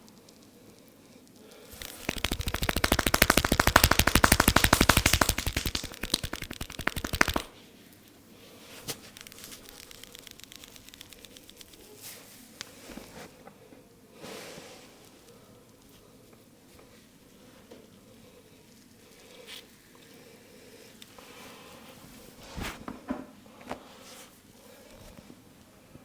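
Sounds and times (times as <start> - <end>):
hands slapping and tapping rapidly: 1.7 - 7.5, 9.1 - 11.9.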